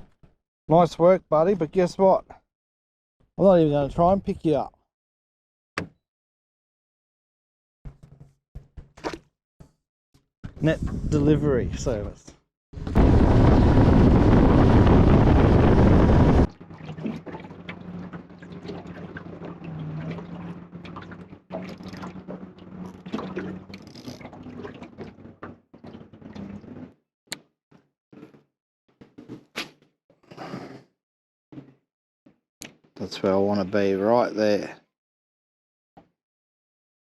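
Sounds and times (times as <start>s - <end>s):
rush of wind and water: 12.8s - 25.1s
water sounds: 13.0s - 27.0s.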